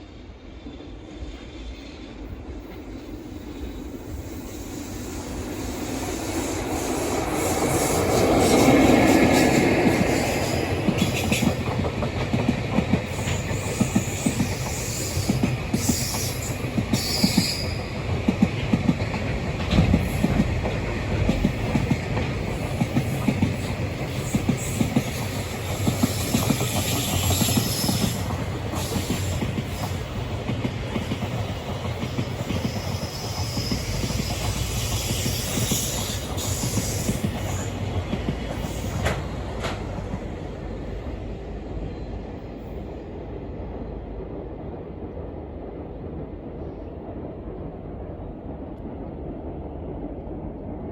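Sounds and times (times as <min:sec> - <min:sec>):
freight train wheels clattering: 0:05.4 - 0:41.8.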